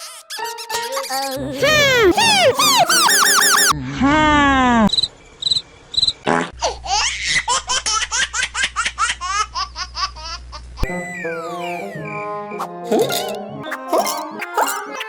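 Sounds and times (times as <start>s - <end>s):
high-pitched giggling laughter: 0.0s - 3.7s
cartoon tones arching up and down: 1.6s - 3.8s, 12.9s - 15.0s
cricket chirps: 4.9s - 6.2s.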